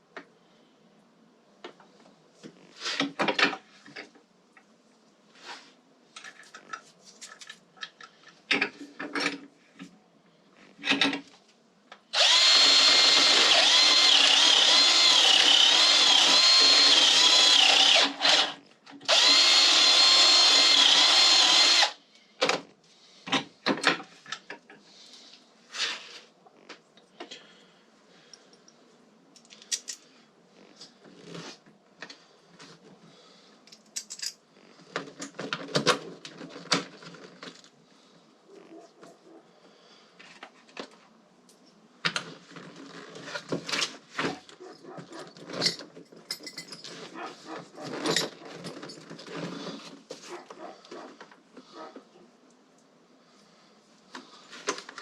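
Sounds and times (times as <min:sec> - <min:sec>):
power drill whining: 0:12.1 - 0:22.0
parts clicking and knocking: 0:28.3 - 0:30.0, 0:33.6 - 0:37.6.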